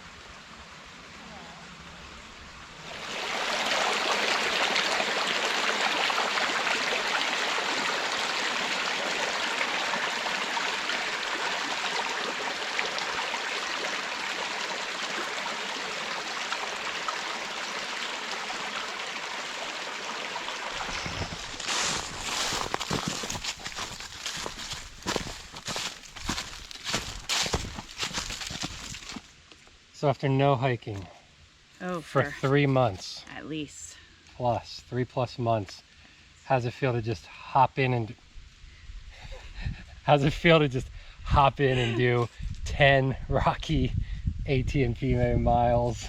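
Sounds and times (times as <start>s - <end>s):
creek water rushing: 0.0s - 29.2s
footsteps: 20.8s - 29.3s.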